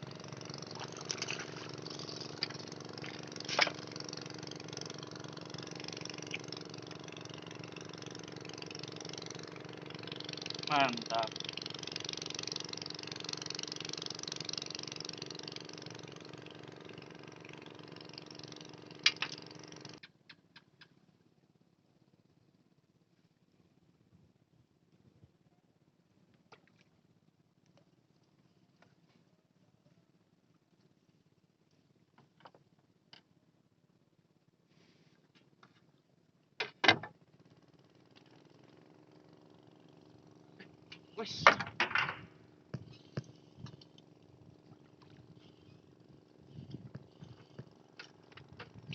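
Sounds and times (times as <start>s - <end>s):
small engine running: 0.0s - 20.1s, 37.1s - 48.9s
faint mechanical hum: 0.0s - 48.9s.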